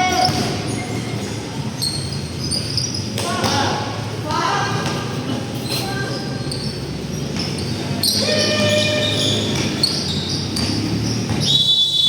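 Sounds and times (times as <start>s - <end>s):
basketball bouncing on court: 0.0s - 1.0s, 7.2s - 11.8s
shoe squeaks: 0.0s - 3.2s, 5.6s - 12.0s.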